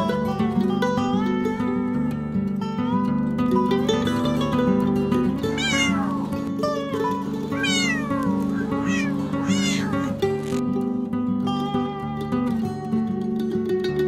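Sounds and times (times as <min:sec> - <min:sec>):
cat meowing: 0:05.5 - 0:10.6.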